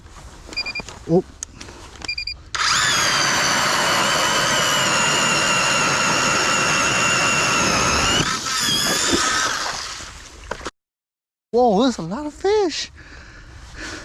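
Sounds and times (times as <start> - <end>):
electric ice auger drilling: 2.6 - 10.0.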